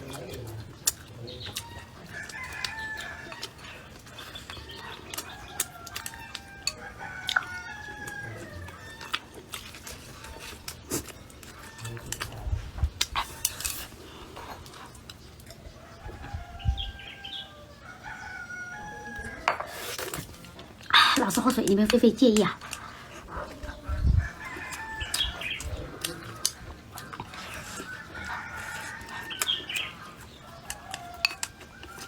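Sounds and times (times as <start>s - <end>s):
rooster crowing: 1.6s - 3.6s, 4.7s - 9.4s, 15.8s - 19.6s, 24.2s - 26.6s, 27.2s - 29.8s, 30.4s - 32.0s.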